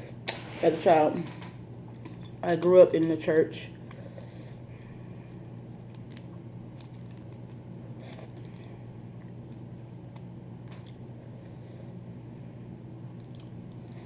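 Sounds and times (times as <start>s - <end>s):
steady low hum: 0.0s - 14.0s
crawfish shells cracking: 3.9s - 11.1s.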